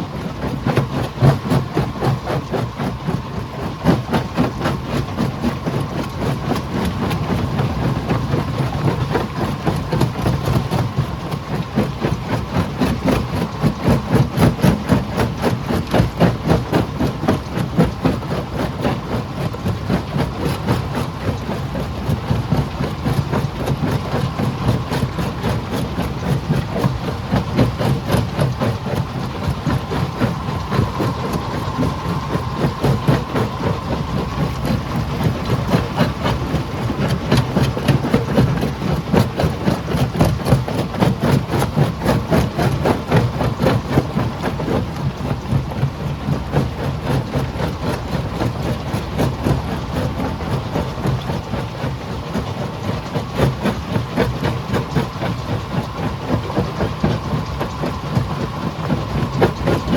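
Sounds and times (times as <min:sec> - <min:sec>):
rock-crushing machinery droning: 0:00.0 - 0:59.9.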